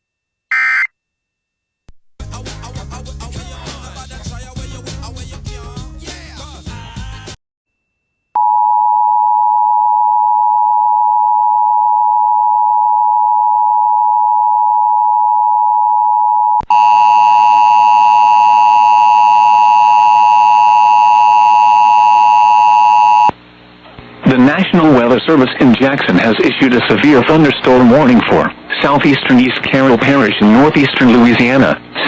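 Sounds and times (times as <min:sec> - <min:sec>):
two-tone electronic alert tone: 0:00.5 - 0:00.9
radio station music: 0:02.2 - 0:07.4, 0:24.3 - 0:31.8.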